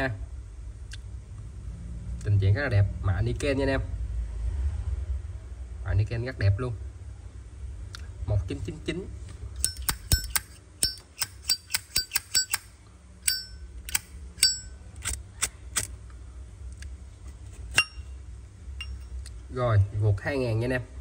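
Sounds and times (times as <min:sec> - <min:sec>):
lighter metal clicks and clinks: 0:09.6 - 0:15.9.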